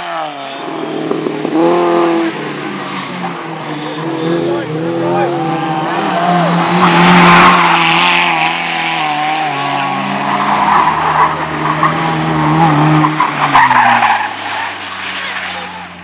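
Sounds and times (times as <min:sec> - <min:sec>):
racing engines running hard: 0:00.0 - 0:16.0.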